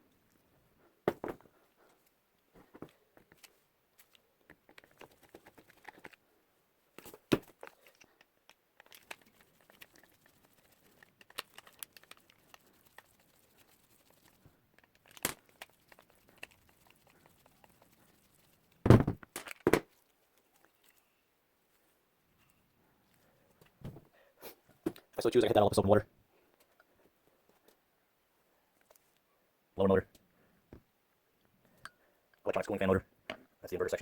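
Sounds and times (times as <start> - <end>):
crinkling and light clicks: 1.8 - 6.2, 7.0 - 13.4, 14.0 - 17.9, 18.7 - 21.2.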